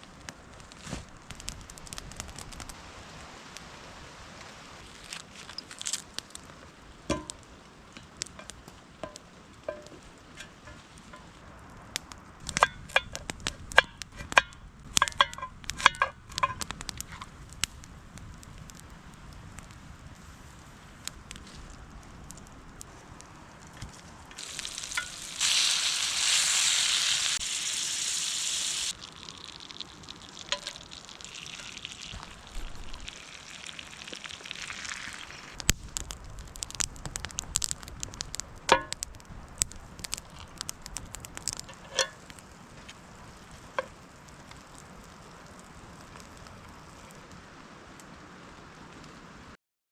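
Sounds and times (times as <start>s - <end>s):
sharp pops and crackles: 0.0s - 2.9s, 4.4s - 47.4s
food frying with sizzle: 24.4s - 39.0s.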